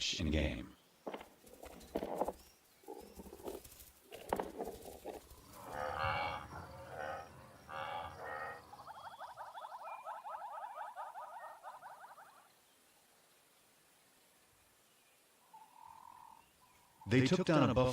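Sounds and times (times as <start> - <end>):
animals mooing: 5.3 - 9.0.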